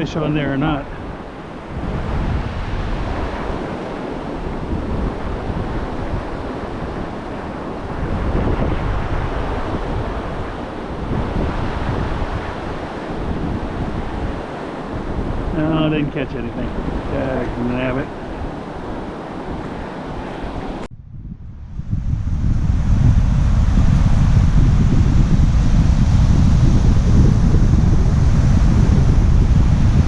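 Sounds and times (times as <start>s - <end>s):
surf washing on beach: 0.0s - 20.9s, 21.8s - 30.0s
wind buffeting microphone: 0.0s - 30.0s.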